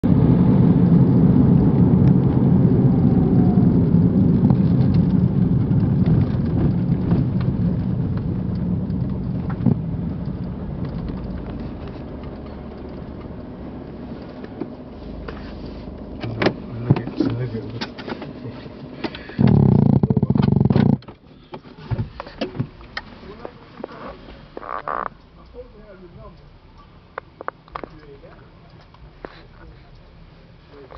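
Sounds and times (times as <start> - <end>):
small car engine humming: 0.0 - 24.6.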